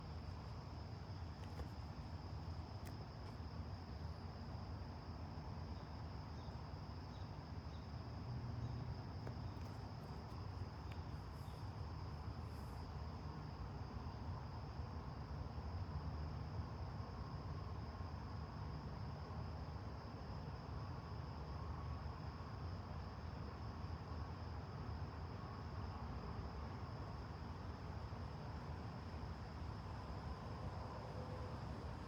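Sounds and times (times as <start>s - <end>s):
crickets trilling: 0.0s - 15.8s.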